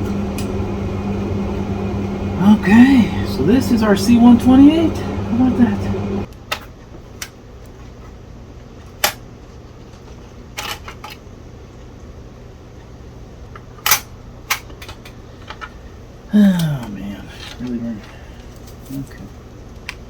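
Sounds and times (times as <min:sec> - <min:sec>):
low steady hum: 0:00.0 - 0:06.3.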